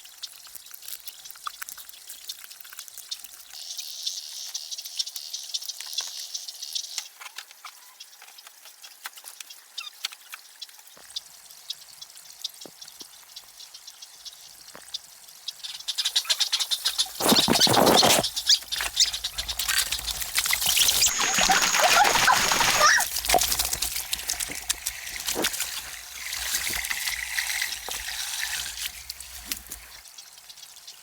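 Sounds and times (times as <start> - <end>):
insect buzzing hiss: 16.3 - 30.0.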